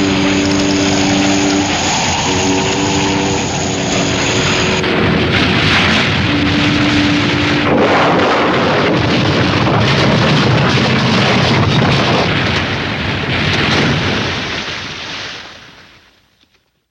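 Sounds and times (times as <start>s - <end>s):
low steady tone: 0.0s - 10.0s
ship crashing on rocks: 0.0s - 14.4s.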